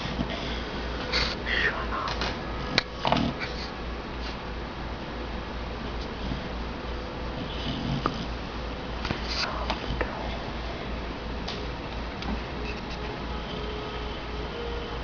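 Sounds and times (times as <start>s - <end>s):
sharp snorts: 0.0s - 2.3s, 2.9s - 4.4s, 7.3s - 8.3s
pet snoring and snuffling: 2.9s - 4.4s, 6.0s - 8.4s.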